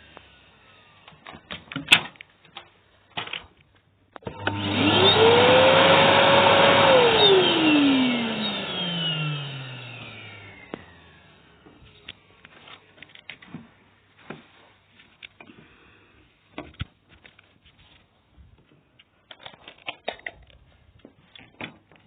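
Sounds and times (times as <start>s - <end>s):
vacuum cleaner motor whine: 0.0s - 1.7s, 4.2s - 14.5s.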